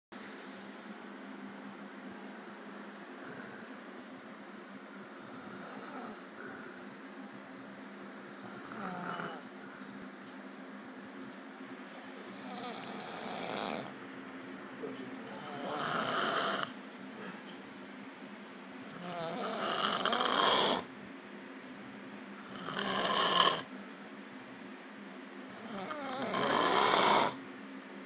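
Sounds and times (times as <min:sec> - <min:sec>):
person snoring loudly: 0:08.4 - 0:09.8, 0:12.3 - 0:14.0, 0:15.3 - 0:16.8, 0:18.8 - 0:20.9, 0:22.4 - 0:23.7, 0:25.5 - 0:27.4.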